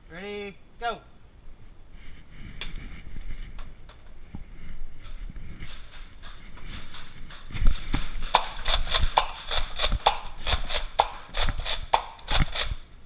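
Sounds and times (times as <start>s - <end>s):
low thumps of players moving: 1.5s - 12.4s
toy blasters clicking and firing: 8.2s - 12.8s.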